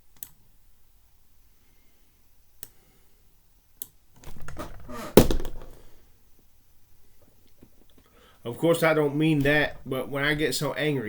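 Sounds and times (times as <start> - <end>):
handling noise: 4.2 - 6.0
loud thump: 4.9 - 5.8.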